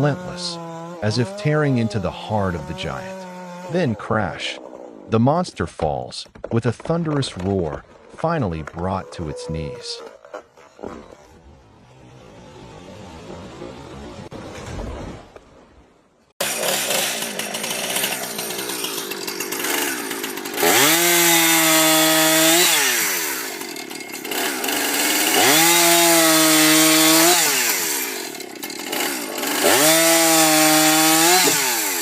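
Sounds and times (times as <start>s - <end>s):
chainsaw revving: 0.0s - 4.8s, 16.4s - 32.0s.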